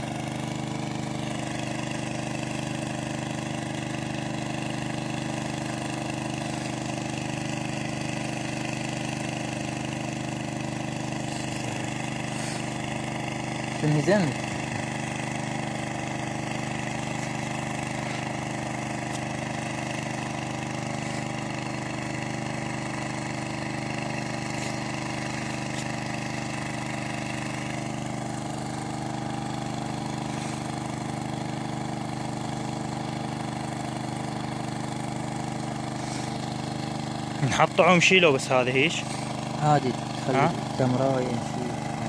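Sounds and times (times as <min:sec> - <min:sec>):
engine running steadily: 0:00.0 - 0:42.0.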